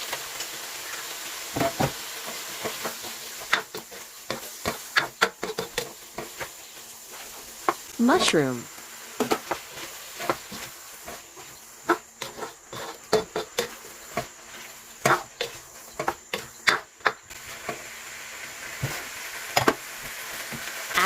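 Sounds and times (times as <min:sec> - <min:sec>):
light sizzle: 0:00.0 - 0:21.0
utensil scraping a frying pan: 0:00.9 - 0:07.9, 0:09.2 - 0:17.9.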